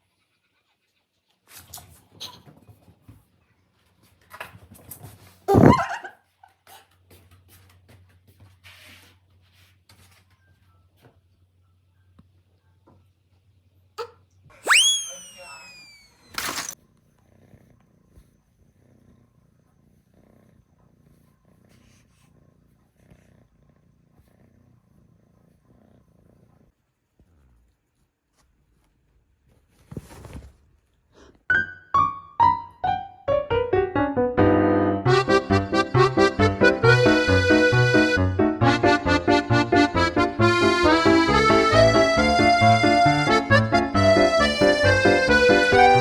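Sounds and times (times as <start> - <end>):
small dog low rumbling: 5.5 - 6.0.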